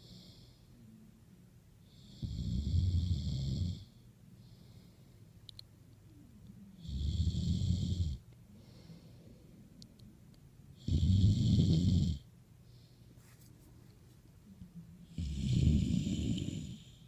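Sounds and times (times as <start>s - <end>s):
loud rasping snores: 2.0s - 3.9s, 6.8s - 8.2s, 10.8s - 12.2s, 15.1s - 17.0s
soft breathing: 3.8s - 6.8s, 8.2s - 11.0s, 12.6s - 17.0s.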